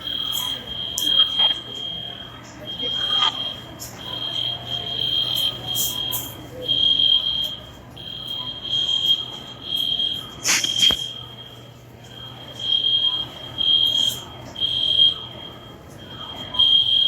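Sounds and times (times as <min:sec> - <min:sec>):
faint steady alarm tone: 0:00.0 - 0:17.0
fire alarm horn beeping: 0:00.0 - 0:17.0.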